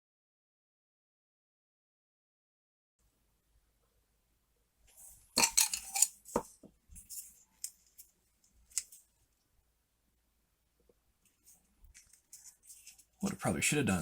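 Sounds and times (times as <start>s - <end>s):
small metal parts clicking: 5.4s - 6.2s.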